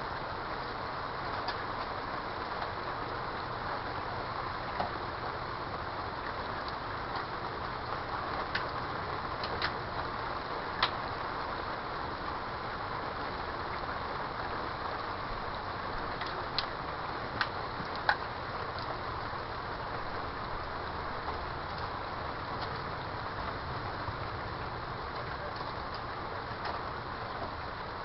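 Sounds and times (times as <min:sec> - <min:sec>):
steady rain falling: 0:00.0 - 0:28.0
sharp drip ticks: 0:15.5 - 0:16.8, 0:17.4 - 0:19.0, 0:21.6 - 0:22.0, 0:25.1 - 0:26.8.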